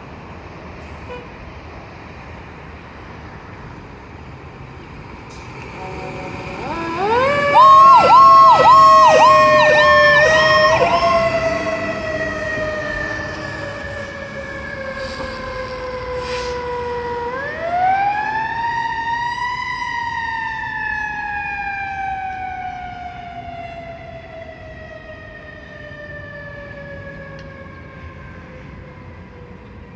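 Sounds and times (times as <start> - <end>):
fire engine siren winding: 5.3 - 28.1.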